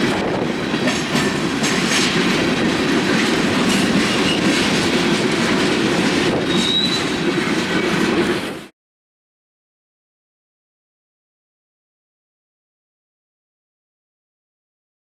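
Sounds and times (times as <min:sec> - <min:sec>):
train wheels rumbling on rails: 0:00.0 - 0:08.7
high wheel squeal: 0:03.6 - 0:04.8, 0:06.4 - 0:08.0.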